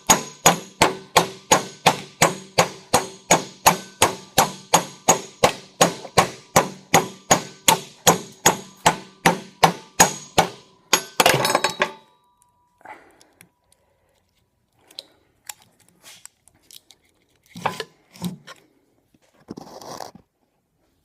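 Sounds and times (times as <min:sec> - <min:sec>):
hammer striking metal punch: 0:00.0 - 0:12.2.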